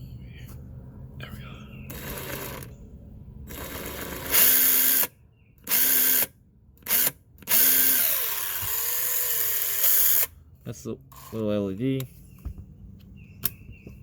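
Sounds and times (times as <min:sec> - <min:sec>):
cordless drill motor spinning: 0:01.9 - 0:02.7, 0:03.5 - 0:10.3.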